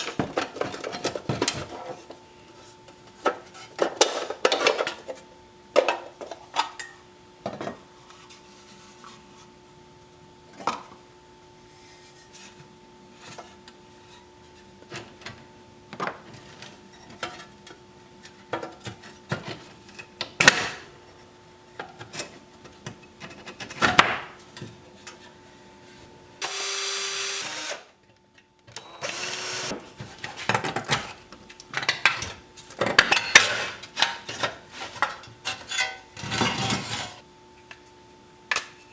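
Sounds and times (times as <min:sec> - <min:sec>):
power drill: 0:26.4 - 0:27.9, 0:28.8 - 0:29.8.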